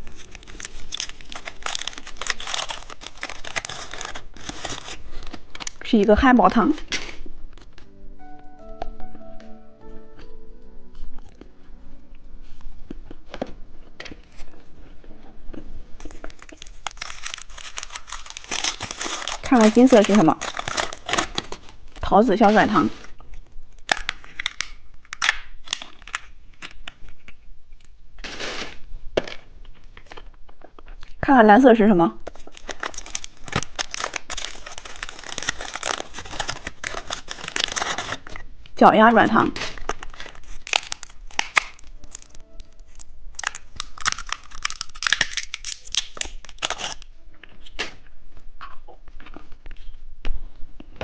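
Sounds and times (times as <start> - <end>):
plastic wrapper crinkling: 0.0 - 8.0, 16.0 - 31.2, 32.2 - 38.6, 39.4 - 50.0
wrapper tearing: 0.0 - 8.0, 16.0 - 31.2, 32.2 - 38.5, 39.4 - 49.9.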